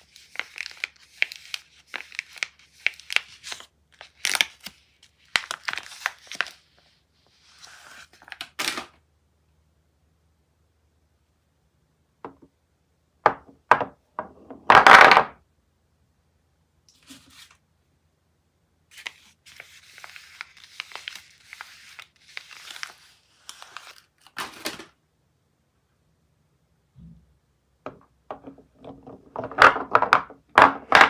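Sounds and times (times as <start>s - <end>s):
wrapper crinkling: 0.0s - 6.6s, 18.9s - 24.9s
wrapper ripping: 0.0s - 6.6s, 18.9s - 24.9s.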